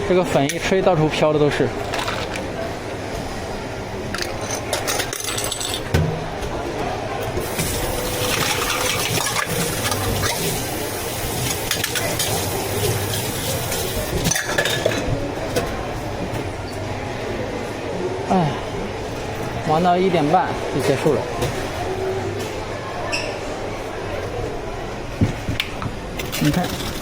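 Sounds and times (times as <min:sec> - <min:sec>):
cups and utensils clinking: 0:04.1 - 0:06.6, 0:07.2 - 0:15.9, 0:25.8 - 0:27.0
liquid pouring: 0:07.4 - 0:14.6.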